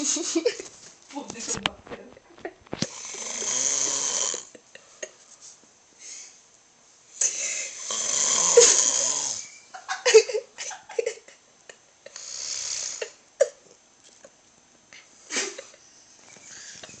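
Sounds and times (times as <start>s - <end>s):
person snoring: 2.8s - 4.5s, 7.2s - 9.5s, 12.1s - 13.2s.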